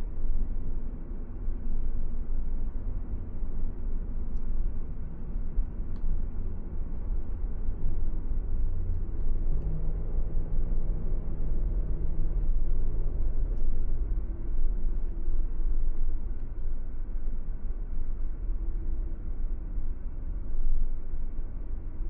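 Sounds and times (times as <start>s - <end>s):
car engine and tyre rumble: 0.0s - 22.0s
faint engine hum: 0.0s - 22.0s.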